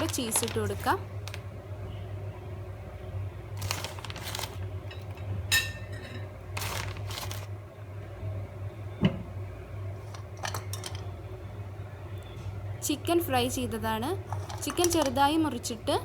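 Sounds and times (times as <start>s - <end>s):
rustling and scraping handling: 0.0s - 1.4s, 3.6s - 7.5s, 14.2s - 15.3s.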